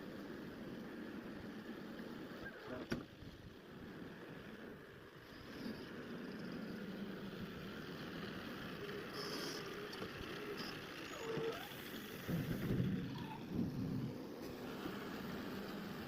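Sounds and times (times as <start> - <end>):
diesel engine running: 3.2 - 16.0.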